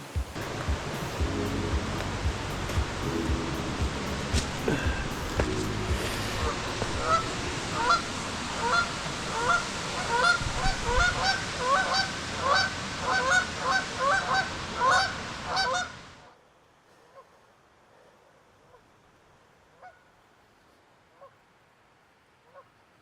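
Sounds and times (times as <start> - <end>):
rushing hiss: 0.0 - 15.5.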